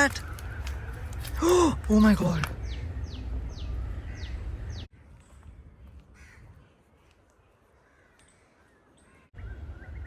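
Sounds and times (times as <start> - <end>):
quiet outdoor ambience: 0.0 - 10.0
crow cawing: 6.1 - 6.7, 7.8 - 9.3.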